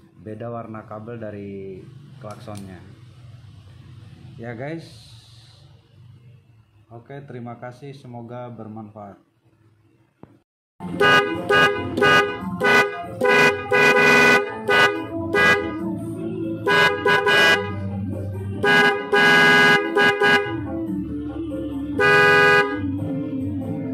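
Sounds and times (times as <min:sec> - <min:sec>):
two-tone car horn toots: 0:10.8 - 0:15.8, 0:16.6 - 0:17.9, 0:18.6 - 0:20.7, 0:22.0 - 0:22.9.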